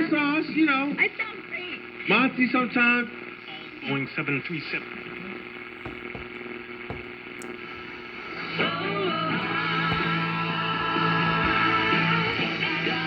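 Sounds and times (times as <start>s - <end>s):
guitar music on radio: 0.4s - 13.0s
steady low hum: 3.0s - 13.0s.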